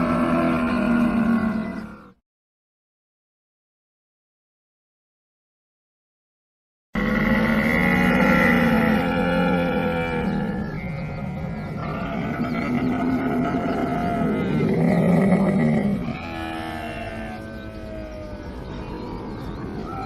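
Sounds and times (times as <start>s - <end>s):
camel groaning: 7.0s - 18.6s.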